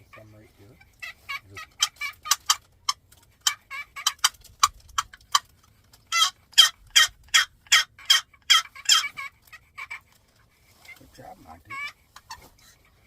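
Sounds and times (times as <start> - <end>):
turkey call yelps: 0.8 - 4.4, 6.1 - 10.1, 11.7 - 12.5.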